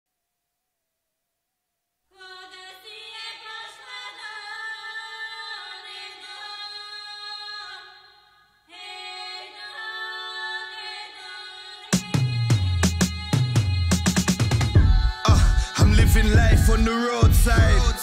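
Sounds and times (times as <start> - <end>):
person singing long held notes: 14.7 - 18.0.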